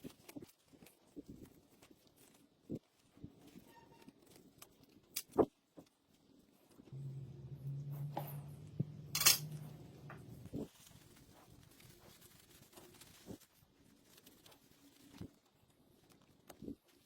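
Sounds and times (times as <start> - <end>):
metallic clink: 7.8 - 9.7.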